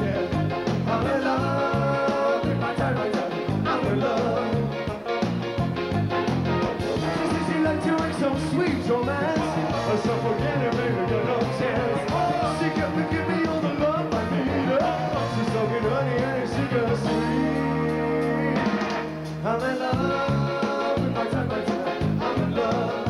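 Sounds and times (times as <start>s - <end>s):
rock band playing live: 0.0s - 23.0s
wavering lead melody: 5.6s - 19.2s.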